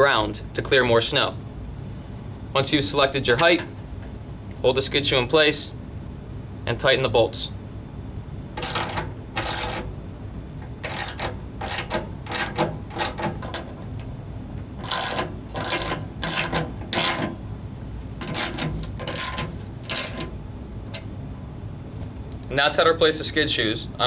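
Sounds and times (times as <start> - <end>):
socket wrench ratchet clicking: 8.6 - 9.9, 10.6 - 13.8, 14.8 - 17.4, 18.2 - 20.3.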